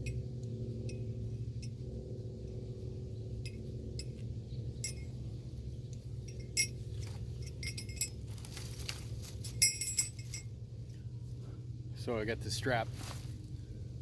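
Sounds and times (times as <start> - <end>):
steady low hum: 0.0 - 14.0
metal strap hardware jingling: 4.8 - 5.2, 5.9 - 10.6.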